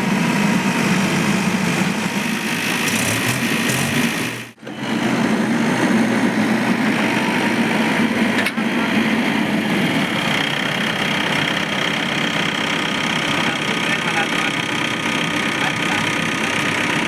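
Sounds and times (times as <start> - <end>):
diesel engine running: 0.0 - 17.0.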